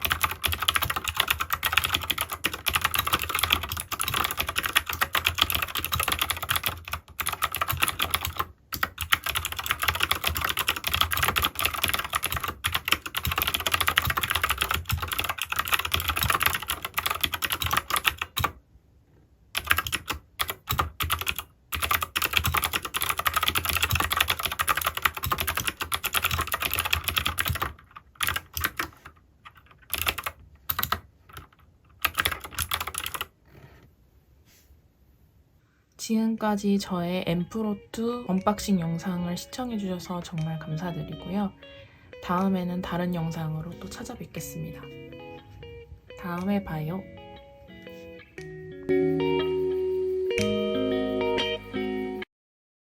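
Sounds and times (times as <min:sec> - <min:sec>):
clicky mechanical keyboard typing: 0:00.0 - 0:18.6, 0:19.6 - 0:33.3.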